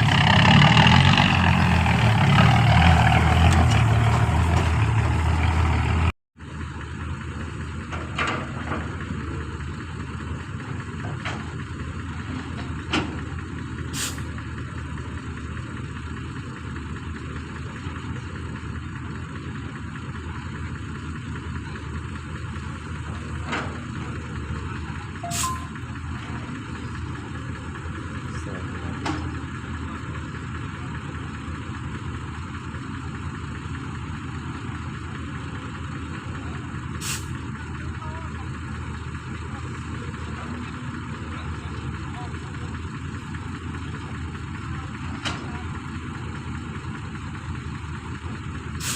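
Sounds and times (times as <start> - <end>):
heavy engine running: 0.0 - 48.9
short high hisses: 14.0 - 14.3, 37.0 - 37.3.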